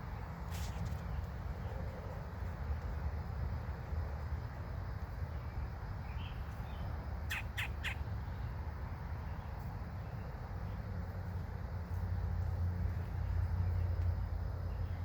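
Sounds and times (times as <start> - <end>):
faint bird chirps: 5.4 - 8.6
young woodpecker calling: 6.1 - 8.1.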